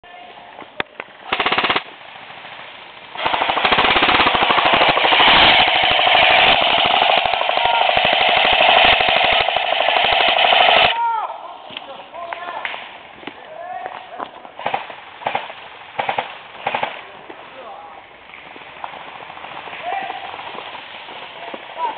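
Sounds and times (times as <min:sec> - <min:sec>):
airsoft guns firing: 0:01.2 - 0:01.9, 0:03.2 - 0:11.0, 0:14.6 - 0:17.1.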